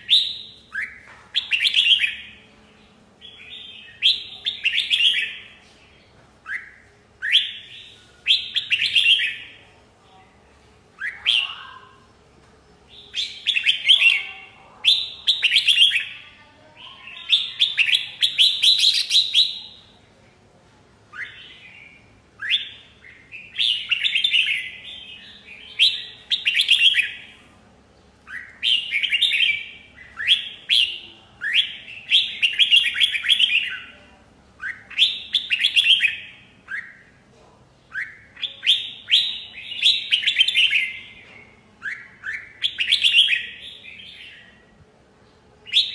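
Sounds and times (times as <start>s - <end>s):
bulbul singing: 6.4s - 9.6s, 12.8s - 20.0s, 21.1s - 27.4s, 28.1s - 34.0s, 34.6s - 37.2s, 37.9s - 44.6s.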